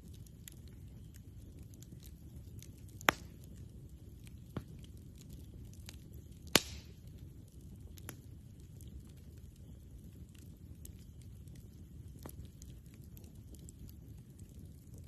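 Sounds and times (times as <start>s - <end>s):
campfire crackling: 0.0s - 15.0s
fire popping: 0.0s - 15.0s.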